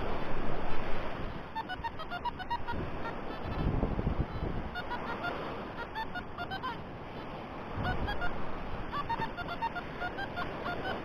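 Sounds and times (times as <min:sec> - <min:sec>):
metal detector beeps: 0:01.6 - 0:03.7, 0:04.3 - 0:06.8, 0:07.8 - 0:11.0
wind buffeting microphone: 0:02.7 - 0:04.8.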